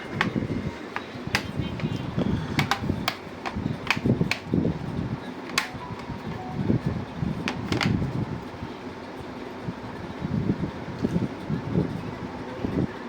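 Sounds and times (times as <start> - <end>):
screwdriver clicking on plastic: 1.0 - 4.5, 5.5 - 5.8
low handling rumble: 5.8 - 12.9.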